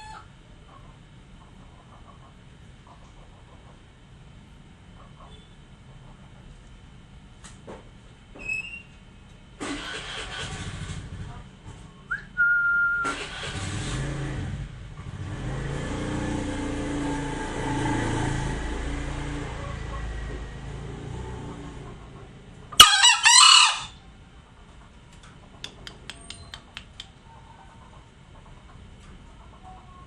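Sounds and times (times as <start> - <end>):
vehicle engine running: 9.6 - 12.2, 13.0 - 30.0
short single-note whistle: 12.1 - 13.1.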